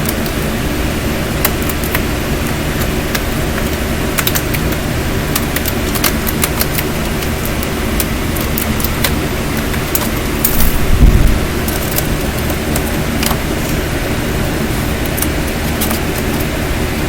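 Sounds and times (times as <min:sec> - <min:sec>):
mechanical hum and hiss: 0:00.0 - 0:17.0
small clicks and taps: 0:01.4 - 0:10.6, 0:15.0 - 0:16.5.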